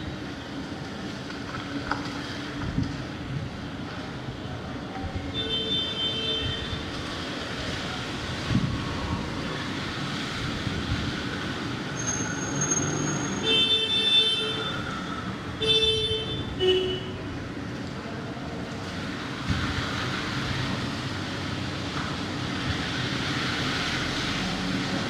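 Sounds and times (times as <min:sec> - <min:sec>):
street traffic: 0:00.0 - 0:25.0
vehicle horns honking: 0:15.6 - 0:17.2.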